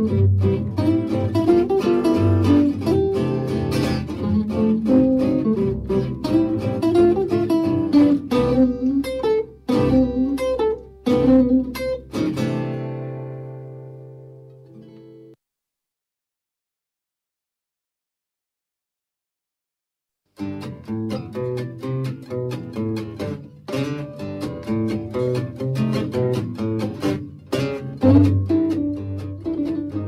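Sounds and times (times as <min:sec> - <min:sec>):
plucked string music: 0:00.0 - 0:15.4, 0:20.4 - 0:30.0.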